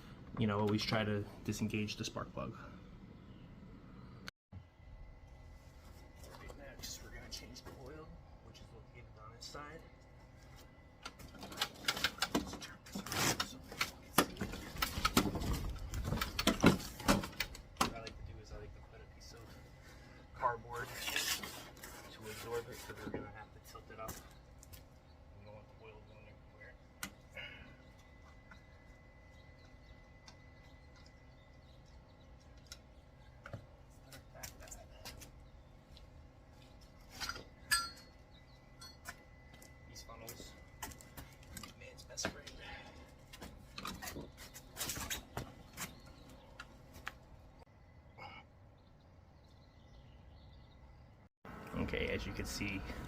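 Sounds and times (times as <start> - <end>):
scraping rustle: 11.4 - 17.3, 20.7 - 23.4, 43.4 - 47.2
sharp clink: 37.2 - 38.2.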